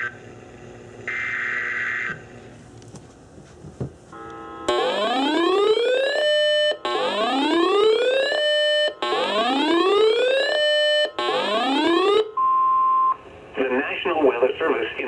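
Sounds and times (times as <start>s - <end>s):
electronic whooping alarm: 4.2s - 13.2s.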